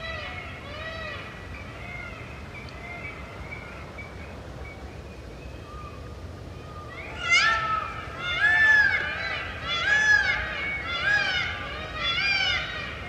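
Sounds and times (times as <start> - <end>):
peafowl calling: 6.8 - 13.0.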